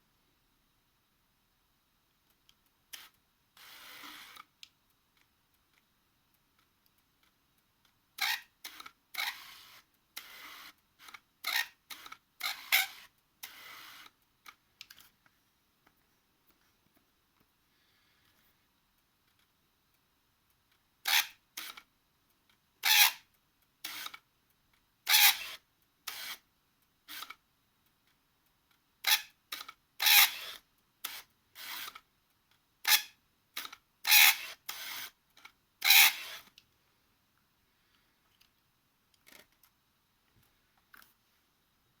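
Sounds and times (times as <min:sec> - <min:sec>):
lens autofocus grinding: 0:08.2 - 0:14.1, 0:25.1 - 0:26.4, 0:29.0 - 0:32.0, 0:32.9 - 0:35.1, 0:35.8 - 0:36.5.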